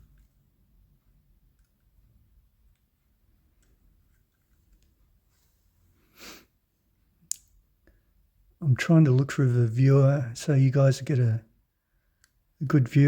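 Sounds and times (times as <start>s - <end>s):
soft rustle: 0.0s - 6.5s.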